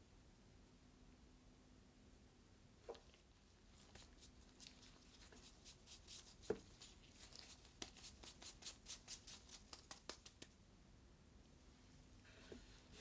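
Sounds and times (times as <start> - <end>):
soft brushing of flour by hand: 2.8 - 10.4, 11.6 - 13.0.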